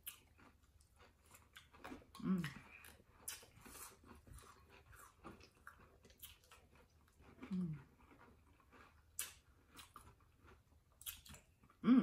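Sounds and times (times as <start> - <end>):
faint chewing of soggy cereal: 0.0 - 11.8
wet mouth clicks: 11.0 - 11.5.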